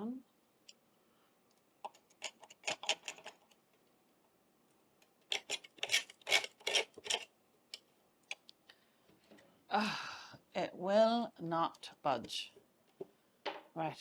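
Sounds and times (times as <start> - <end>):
metal tool scraping wood: 5.3 - 7.3.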